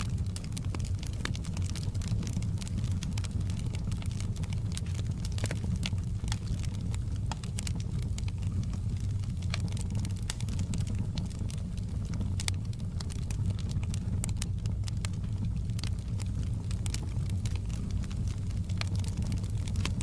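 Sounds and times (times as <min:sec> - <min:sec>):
fireplace fire crackling: 0:00.0 - 0:20.0.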